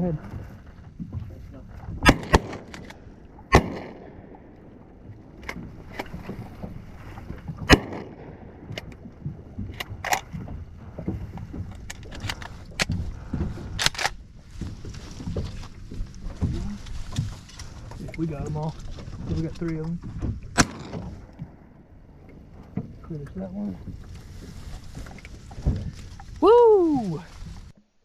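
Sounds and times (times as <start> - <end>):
shotgun shots with echo: 2.0 - 2.7, 3.5 - 4.2, 7.7 - 8.3, 20.6 - 21.1.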